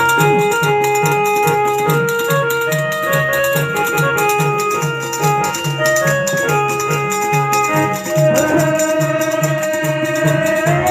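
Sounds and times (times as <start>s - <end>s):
electronic keyboard organ melody: 0.0s - 10.9s
rattling percussion beat: 0.0s - 10.9s
wavering sliding held tone: 0.0s - 10.9s.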